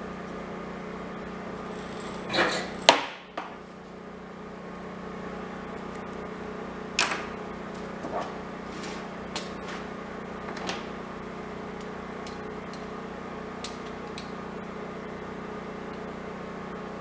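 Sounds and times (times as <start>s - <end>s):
steady low hum: 0.0s - 17.0s
metal scrape: 1.6s - 2.8s
sharp knocks on metal: 2.9s - 3.6s.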